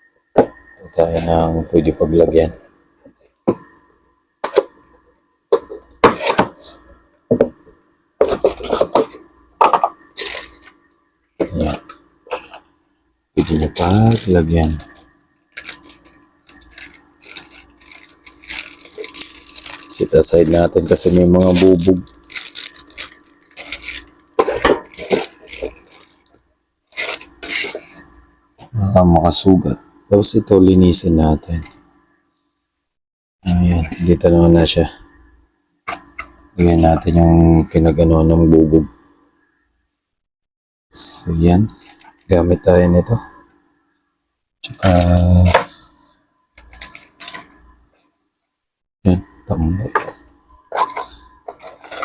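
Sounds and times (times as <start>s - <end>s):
crackling rustling handling noise: 8.2s - 12.7s, 13.4s - 28.2s, 44.7s - 48.3s, 49.6s - 52.0s
hard objects clattering: 15.6s - 26.4s, 49.9s - 52.0s.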